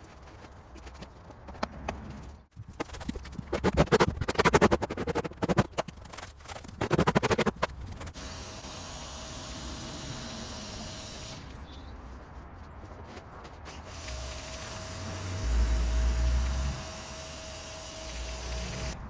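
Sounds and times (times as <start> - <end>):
rapid scraping strokes: 0.0 - 8.4.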